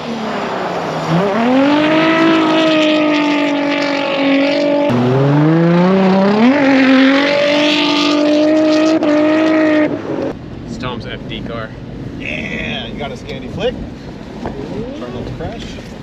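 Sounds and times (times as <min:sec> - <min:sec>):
racing car engine at high revs: 0:00.0 - 0:10.4.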